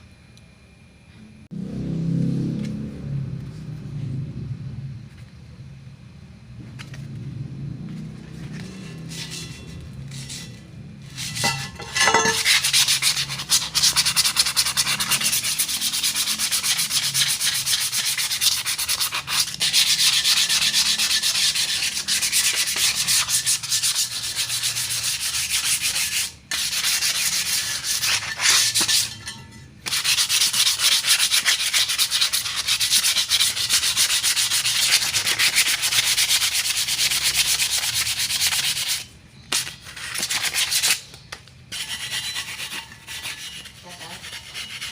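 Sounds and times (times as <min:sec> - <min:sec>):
hand sanding metal rim: 0:08.2 - 0:41.0, 0:41.7 - 0:44.9.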